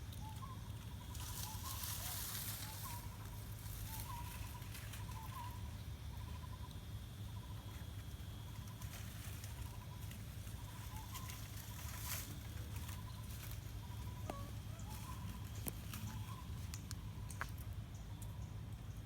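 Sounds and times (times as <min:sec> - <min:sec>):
faint high chirping: 0:08.5 - 0:16.7.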